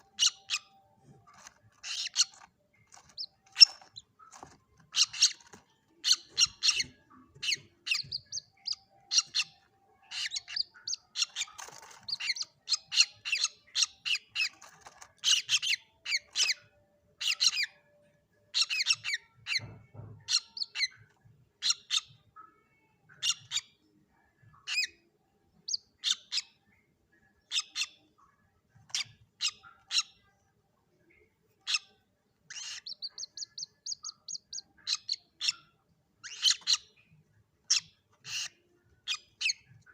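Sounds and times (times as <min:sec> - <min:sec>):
young moorhens peeping: 0:00.0 - 0:17.9, 0:25.6 - 0:26.6, 0:31.5 - 0:39.9.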